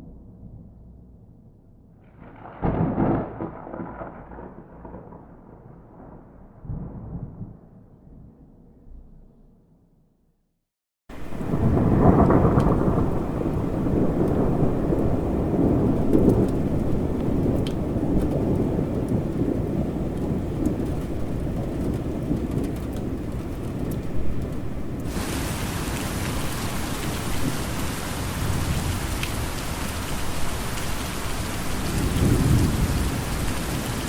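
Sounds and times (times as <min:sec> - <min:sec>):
rolling thunder: 0:00.0 - 0:08.8, 0:11.1 - 0:34.0
heavy rain: 0:11.1 - 0:34.0.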